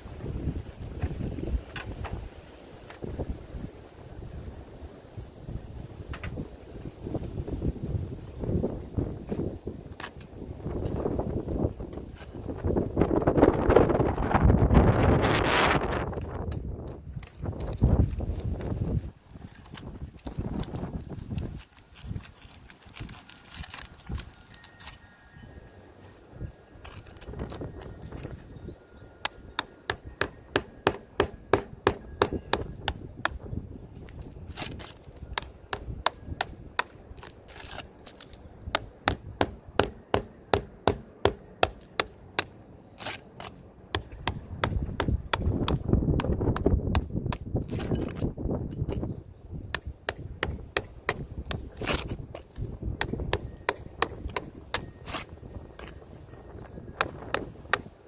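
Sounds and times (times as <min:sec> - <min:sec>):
hammer striking: 0:29.2 - 0:33.4, 0:38.7 - 0:42.5, 0:43.9 - 0:47.6.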